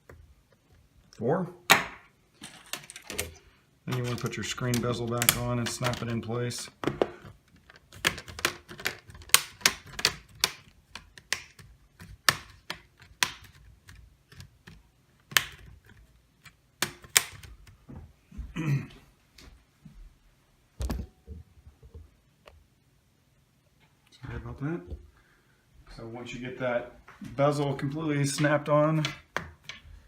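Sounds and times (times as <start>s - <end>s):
sharp plastic clicks: 3.9s - 6.2s, 7.6s - 17.8s.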